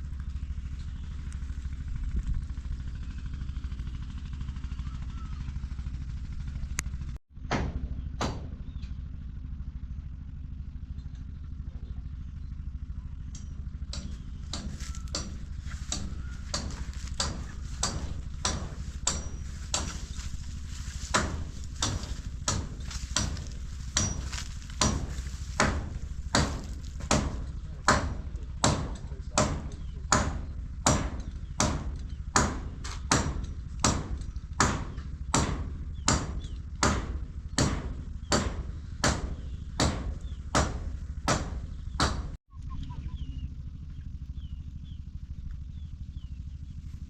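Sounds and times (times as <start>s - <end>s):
low engine drone: 0.0s - 47.0s
sharp knocks: 7.5s - 8.6s, 13.9s - 20.3s, 21.0s - 42.4s.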